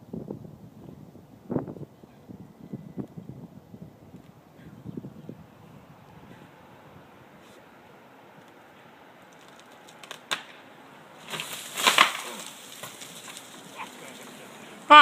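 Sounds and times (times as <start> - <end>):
wood cracking and splintering: 9.2 - 10.6, 11.2 - 14.6.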